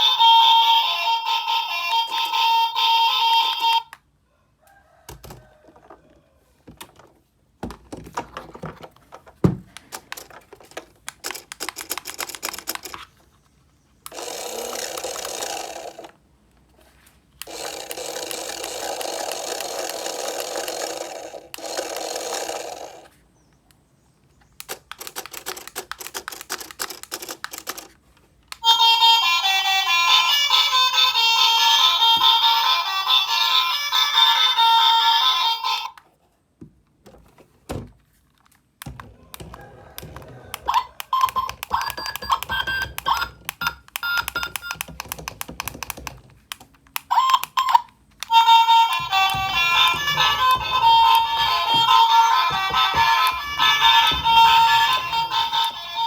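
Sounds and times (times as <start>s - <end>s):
toy playing a tune: 0.0s - 4.0s, 14.1s - 16.1s, 17.4s - 23.1s, 28.6s - 36.0s, 40.0s - 46.1s, 47.0s - 56.0s
toy clicks and crackles: 9.8s - 13.2s, 14.0s - 16.2s, 17.4s - 23.2s, 24.6s - 36.1s, 38.4s - 56.0s
toy motor whirring: 14.1s - 16.2s, 17.4s - 23.2s, 28.6s - 36.0s, 40.0s - 46.1s, 47.0s - 56.0s.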